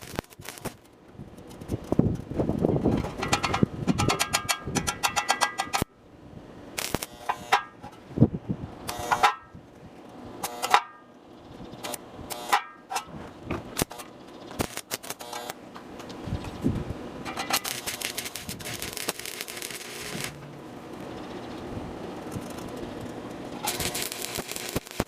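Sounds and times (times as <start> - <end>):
short crackles scrapes and clicks: 0.0 - 2.3, 6.8 - 7.1, 13.8 - 16.2, 17.3 - 20.4, 22.3 - 25.0
arc welding crackle: 0.0 - 2.7, 6.8 - 7.9, 8.8 - 9.4, 10.4 - 10.9, 11.8 - 12.8, 13.7 - 20.4, 22.2 - 25.0.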